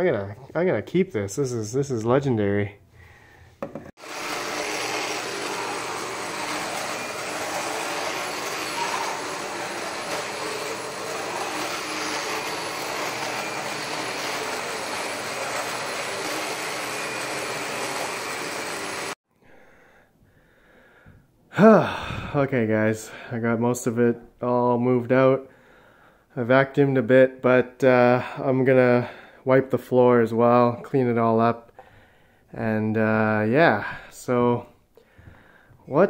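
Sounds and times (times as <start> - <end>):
vacuum cleaner running: 3.6 - 19.2.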